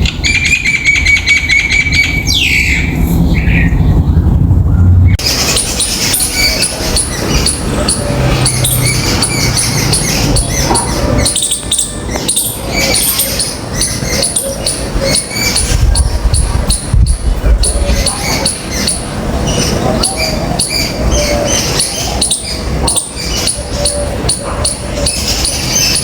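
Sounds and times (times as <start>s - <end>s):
mynas calling harsh chatters: 5.2s - 26.0s.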